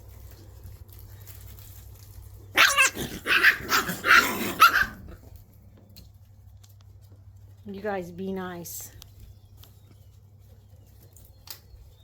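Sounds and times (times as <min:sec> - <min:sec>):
puppies growling and barking: 0:02.4 - 0:06.2.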